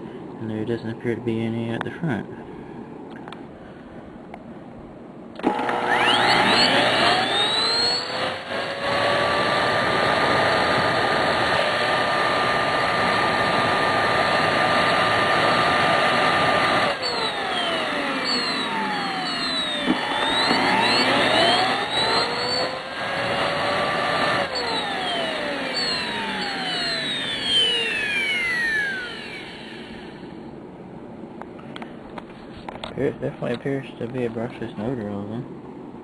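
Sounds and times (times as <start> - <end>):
vacuum cleaner motor whine: 5.4 - 30.4.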